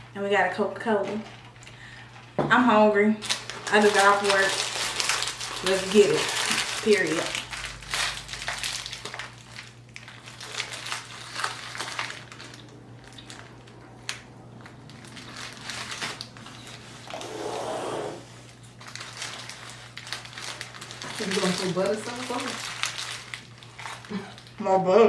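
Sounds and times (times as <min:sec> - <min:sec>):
crunchy crackling handling: 0:03.2 - 0:17.2, 0:18.4 - 0:24.6
paper wrapping rustling: 0:03.2 - 0:17.2, 0:18.6 - 0:24.6.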